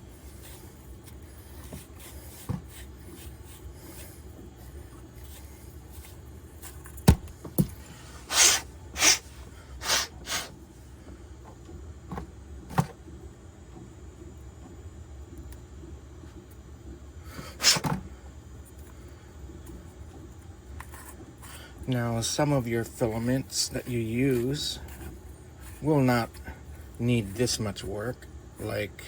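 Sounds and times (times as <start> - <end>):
short hissing bursts: 8.2 - 10.5, 17.6 - 17.9.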